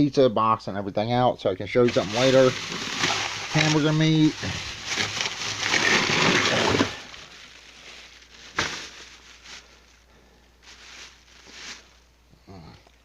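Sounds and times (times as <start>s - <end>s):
faint rustling: 1.9s - 12.1s
plastic bags crinkling: 1.9s - 12.1s.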